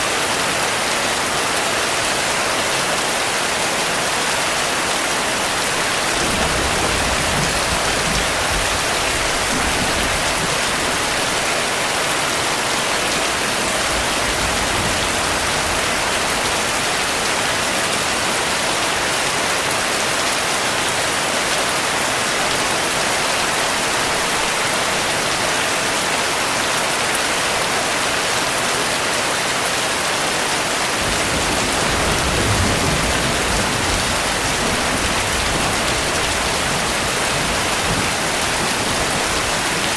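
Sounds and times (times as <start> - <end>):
heavy rain falling: 0.0 - 39.9
distant thunder rumble: 5.6 - 11.4.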